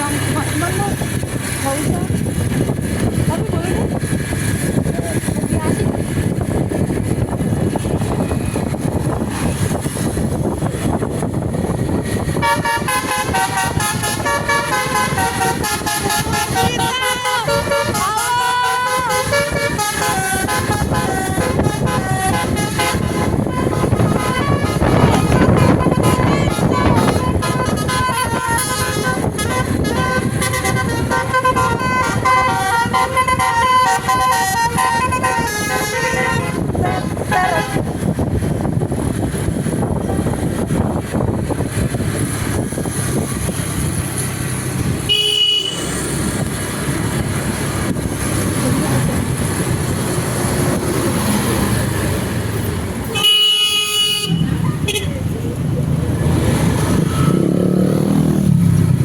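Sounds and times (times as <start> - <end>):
steady low rumble: 0.0 - 45.1
bus musical horn playing tune: 12.2 - 38.2, 45.0 - 46.2, 53.1 - 55.1.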